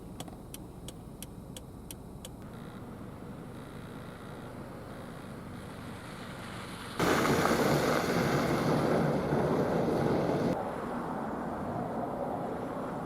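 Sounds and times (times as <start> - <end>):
wind gusting over microphone: 7.0 - 13.0.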